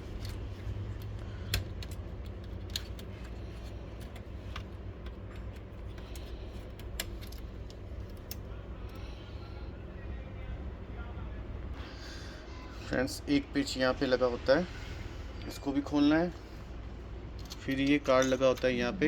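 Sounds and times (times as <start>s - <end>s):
steady low hum: 0.0s - 19.0s
hands clicking inside printer: 1.0s - 8.4s.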